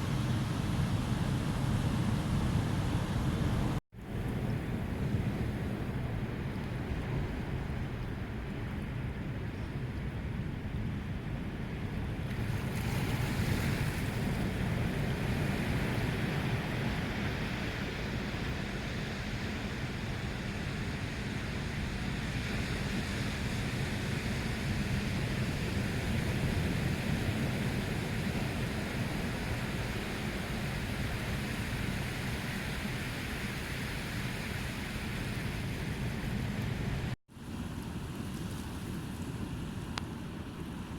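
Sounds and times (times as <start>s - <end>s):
waves breaking on shore: 12.2s - 40.9s.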